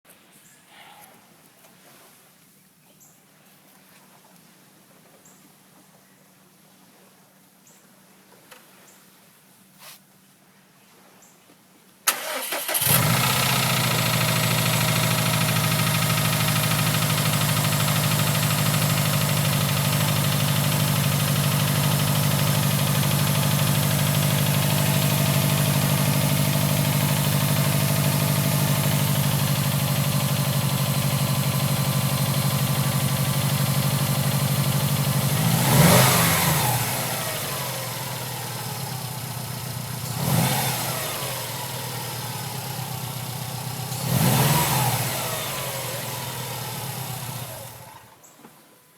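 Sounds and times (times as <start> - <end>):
car engine fast idle with knock: 12.1 - 42.5.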